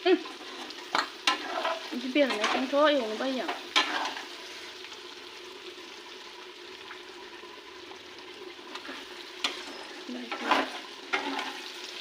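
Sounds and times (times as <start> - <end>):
faint sizzle of food in a pan: 0.0 - 12.0.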